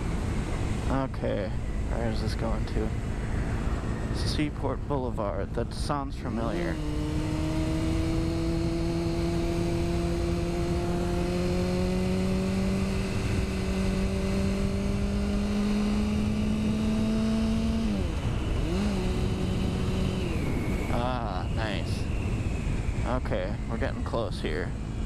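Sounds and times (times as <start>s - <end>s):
motorcycle engine revving: 6.2s - 24.1s
wind rush on microphone: 12.4s - 25.0s.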